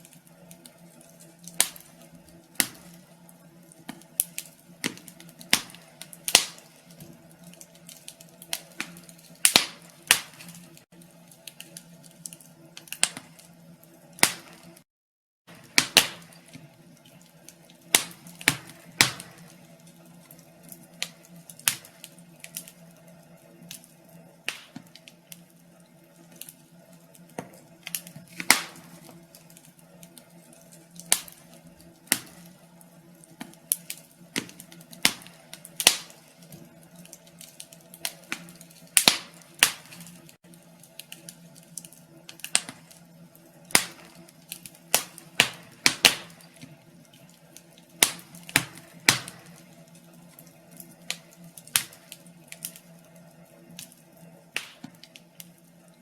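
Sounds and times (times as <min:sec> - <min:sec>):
fire crackling: 0:00.0 - 0:14.8, 0:15.5 - 0:56.0.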